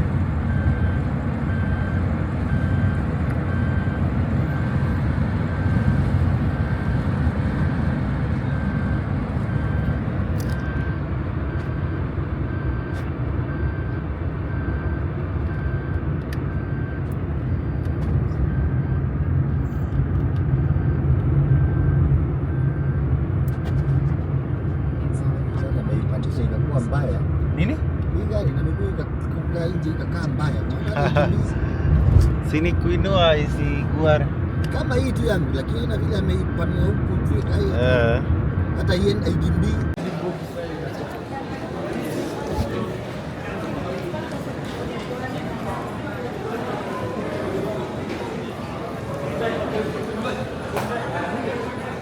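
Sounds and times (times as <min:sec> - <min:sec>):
motor vehicle rumble: 0:00.0 - 0:52.0
faint electronic beep: 0:00.5 - 0:20.0.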